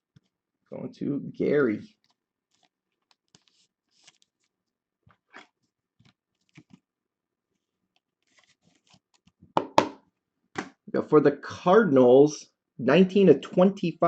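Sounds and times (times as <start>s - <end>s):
cards clicking and rustling: 1.9s - 4.5s, 5.1s - 6.8s.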